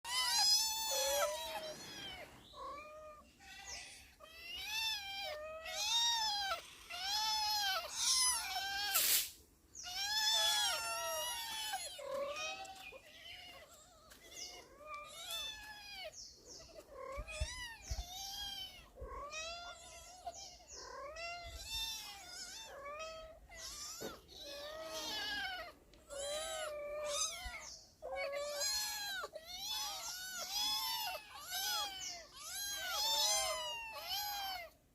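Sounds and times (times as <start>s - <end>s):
cats meowing: 0.0s - 34.9s.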